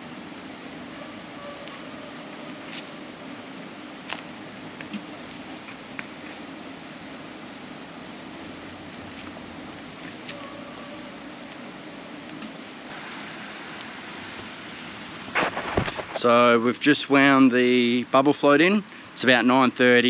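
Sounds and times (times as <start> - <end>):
outdoor background noise: 0.0 - 20.0
high rising bird chirps: 1.1 - 4.4, 10.1 - 12.9.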